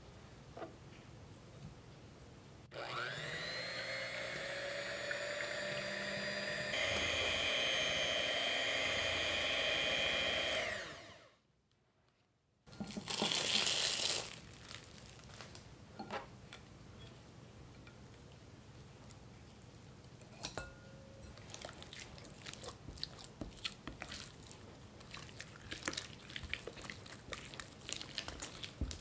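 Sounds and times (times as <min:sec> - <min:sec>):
electric hand mixer whirring: 0:02.7 - 0:11.4.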